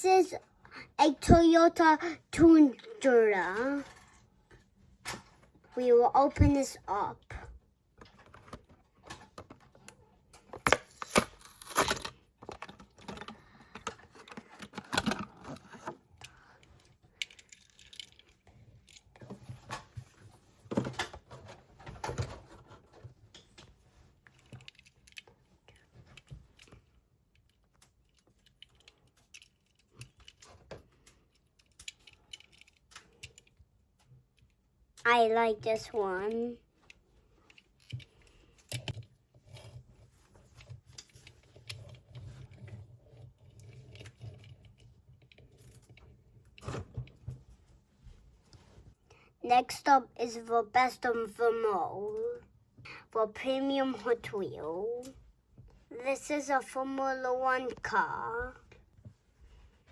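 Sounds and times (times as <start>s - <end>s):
cardboard and plastic package tearing: 10.6s - 12.2s.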